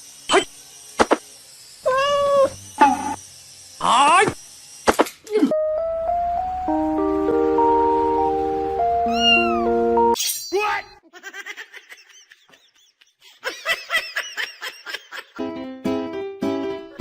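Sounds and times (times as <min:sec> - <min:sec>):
background music: 0:05.5 - 0:10.2
cat meowing loudly: 0:09.1 - 0:09.7.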